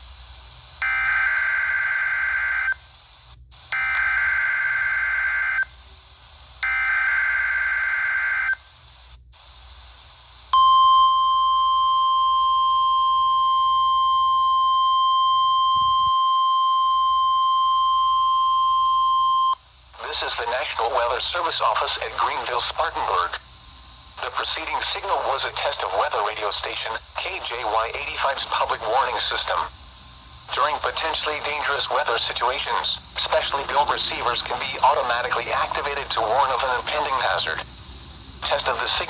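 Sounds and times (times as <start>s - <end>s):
steady warning alarm tone: 0.8s - 2.8s, 3.7s - 5.8s, 6.6s - 8.7s, 10.6s - 19.6s.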